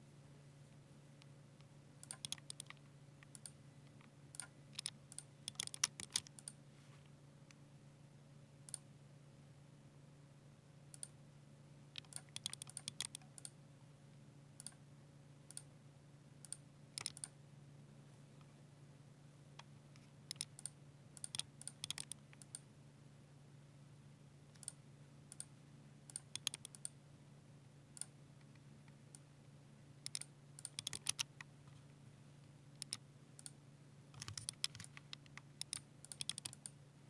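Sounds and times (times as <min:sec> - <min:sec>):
mechanical keyboard typing: 0:02.0 - 0:03.5, 0:04.4 - 0:06.5, 0:12.0 - 0:13.5, 0:16.5 - 0:17.3, 0:20.3 - 0:22.6, 0:26.1 - 0:26.9, 0:30.1 - 0:31.4, 0:32.8 - 0:33.5, 0:34.2 - 0:36.7.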